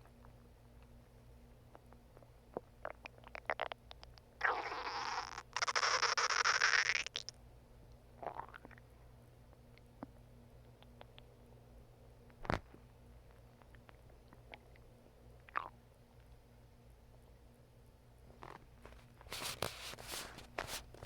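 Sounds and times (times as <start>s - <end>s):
stomach growling: 1.7s - 7.3s, 8.2s - 8.8s.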